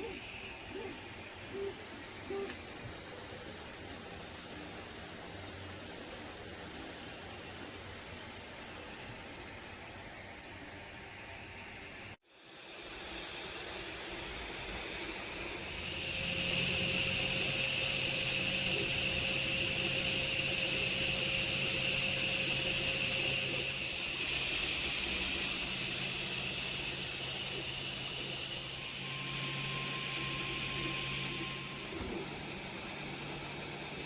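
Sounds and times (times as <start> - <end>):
fan hiss: 0.0 - 34.0.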